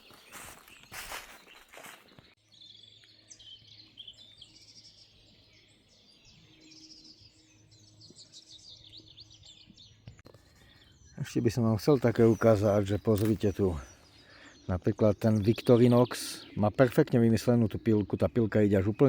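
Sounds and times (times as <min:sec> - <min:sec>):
footsteps: 0:00.0 - 0:02.3
birds chirping and trilling: 0:00.0 - 0:19.0.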